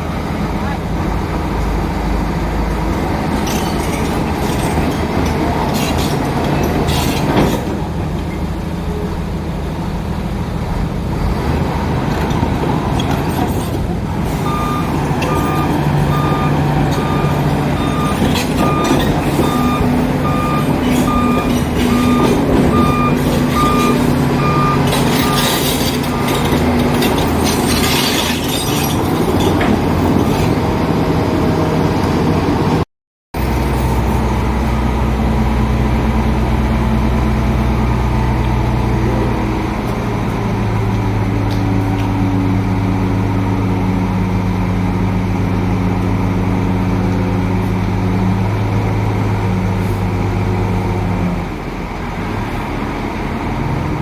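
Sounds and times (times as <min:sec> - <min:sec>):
heavy machinery engines running: 0:00.0 - 0:32.8, 0:33.4 - 0:54.0
reversing alarm beeping: 0:14.4 - 0:26.7.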